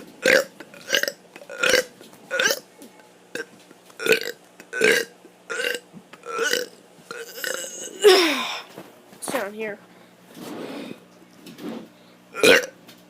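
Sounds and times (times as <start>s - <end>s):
child burping: 0.2s - 2.6s, 3.4s - 8.7s, 12.4s - 12.8s.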